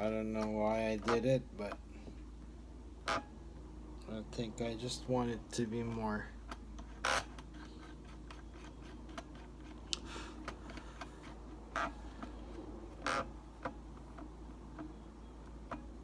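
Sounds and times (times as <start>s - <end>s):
small parts clicking and tapping: 5.8s - 16.0s.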